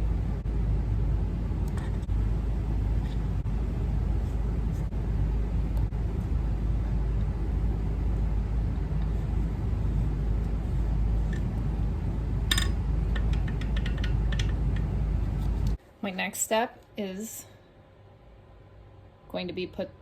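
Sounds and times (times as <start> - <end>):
low background rumble: 0.0 - 16.2
metallic clink: 12.5 - 12.8
light ticks of metal parts: 12.5 - 15.8.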